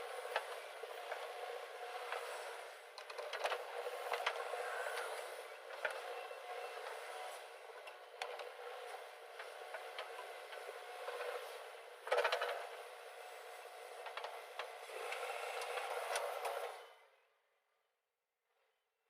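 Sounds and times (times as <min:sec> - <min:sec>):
heavy machinery working: 0:00.0 - 0:17.0.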